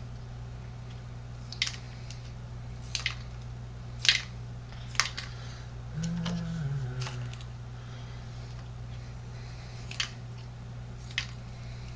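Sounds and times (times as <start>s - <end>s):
steady low hum: 0.0s - 11.9s.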